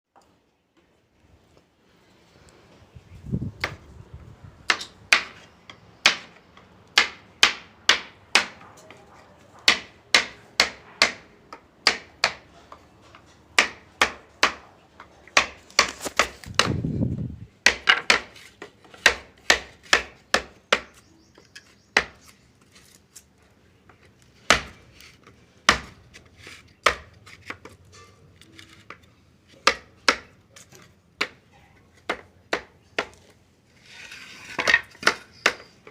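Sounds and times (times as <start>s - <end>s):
tools knocking on wood: 7.0s - 12.5s, 17.6s - 18.3s
rough scraping: 33.6s - 35.4s.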